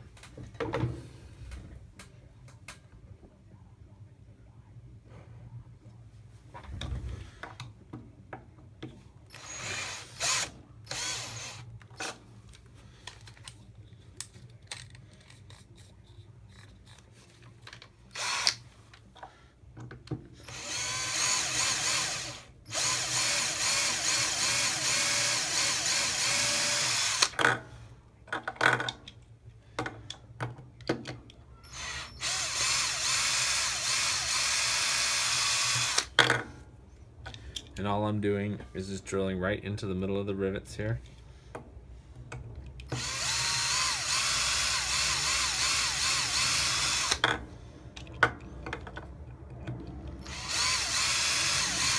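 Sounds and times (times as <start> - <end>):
power drill drilling metal: 9.3 - 12.2, 18.2 - 18.6, 20.4 - 27.4, 31.7 - 36.2, 42.9 - 47.3, 50.2 - 51.9.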